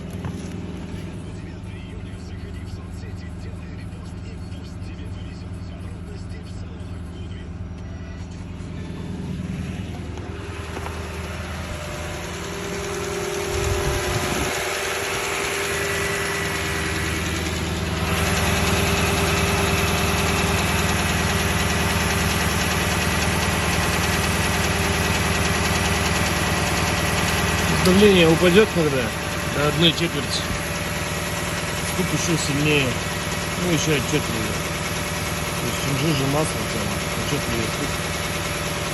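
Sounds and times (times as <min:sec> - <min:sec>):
car engine idling: 0:00.0 - 0:38.9
engine knock: 0:10.0 - 0:38.9.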